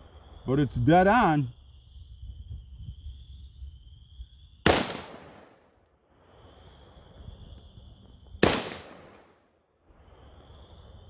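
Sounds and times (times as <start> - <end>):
insects chirring: 0.0 - 11.0
rifle shots with echo: 4.7 - 5.6, 8.4 - 9.4.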